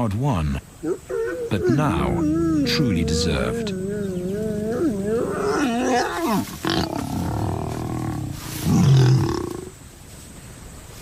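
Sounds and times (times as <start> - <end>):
lion snarling: 0.8 - 9.8
lions growling: 0.8 - 9.8.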